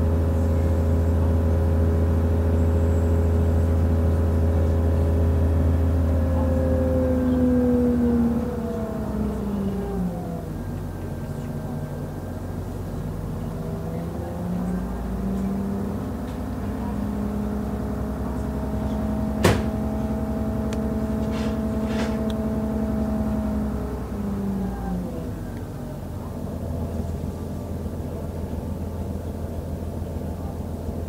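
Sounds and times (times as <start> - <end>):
diesel railcar engine running: 0.0 - 31.0.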